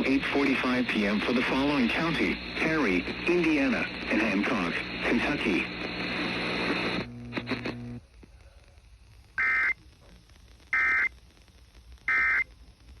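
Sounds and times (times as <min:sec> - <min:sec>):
low hum with clicks: 0:05.7 - 0:09.3.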